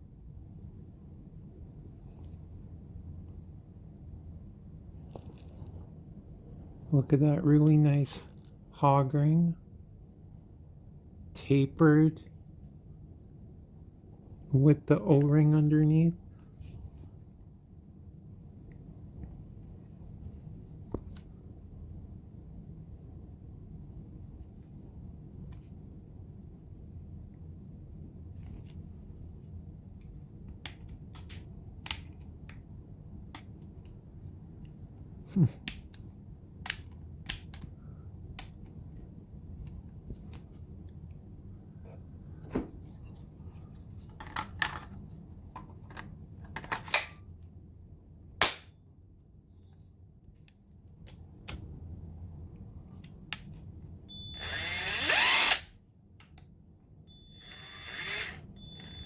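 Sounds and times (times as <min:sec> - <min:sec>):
impact wrench motor whine: 0:54.1 - 0:55.7, 0:57.1 - 0:59.0.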